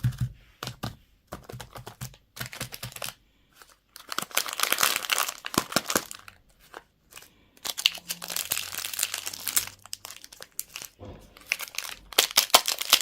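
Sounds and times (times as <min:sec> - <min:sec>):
plastic wrapping crinkling: 0:02.4 - 0:13.0.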